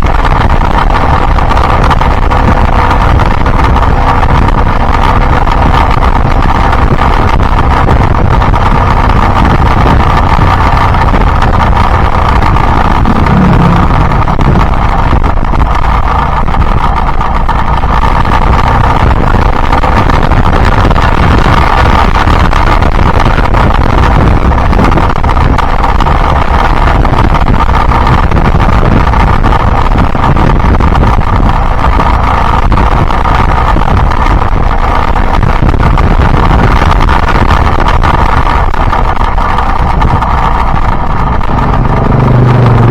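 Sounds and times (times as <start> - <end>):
motorcycle engine running: 0.0 - 42.9
wind rushing over microphone: 0.0 - 42.9.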